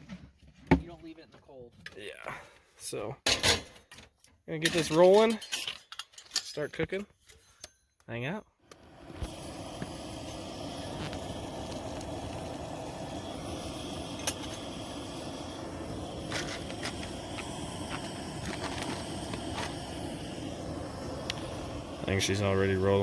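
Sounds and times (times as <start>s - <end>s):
gas stove burner roaring: 8.7s - 23.0s.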